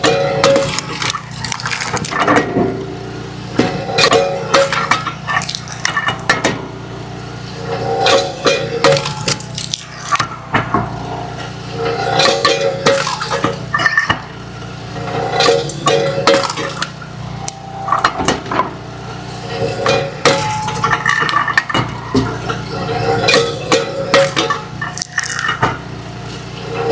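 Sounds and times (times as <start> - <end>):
conveyor drive humming: 0.0 - 26.9
firewood pieces clattering: 0.4 - 2.6, 4.0 - 6.3, 8.1 - 10.2, 15.3 - 18.2, 19.9 - 22.6, 24.2 - 25.8.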